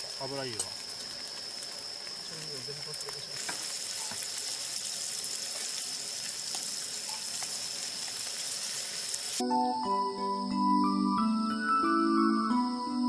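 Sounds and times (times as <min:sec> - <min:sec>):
food sizzling in hot oil: 0:00.0 - 0:09.4
calm instrumental music: 0:09.4 - 0:13.0.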